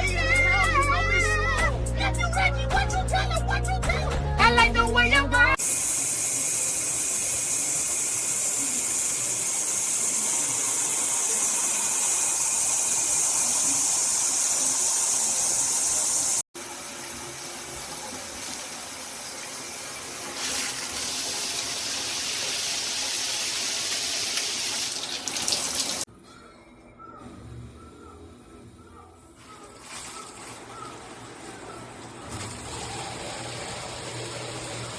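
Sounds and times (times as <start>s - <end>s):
shower water spraying: 5.6s - 26.1s, 29.5s - 34.9s.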